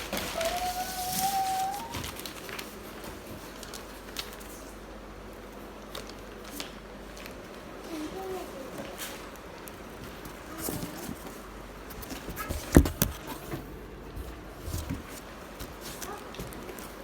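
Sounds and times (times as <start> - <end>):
rustling: 0.0 - 4.8.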